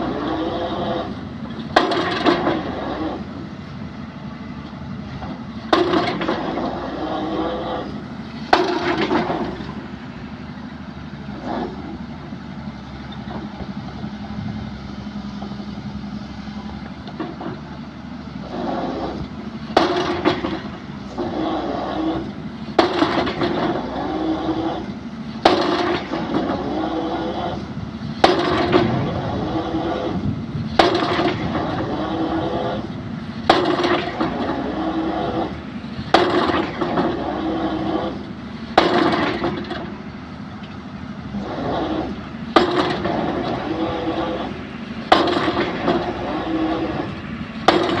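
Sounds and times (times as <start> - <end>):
diesel engine running: 0.0 - 48.0
drop hammer striking pile: 47.6 - 48.0.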